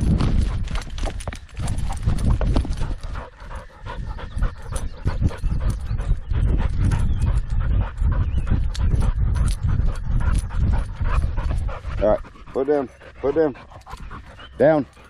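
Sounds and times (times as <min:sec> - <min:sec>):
paws thudding on ground: 0:00.0 - 0:15.0
dog panting: 0:01.6 - 0:15.0.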